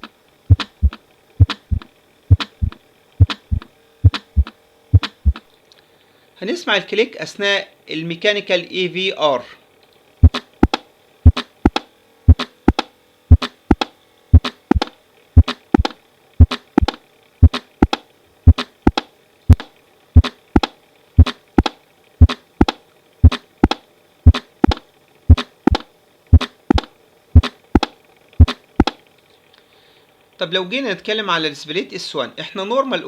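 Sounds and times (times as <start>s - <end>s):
mechanical heart valve clicks: 0.5s - 5.4s, 10.2s - 29.0s.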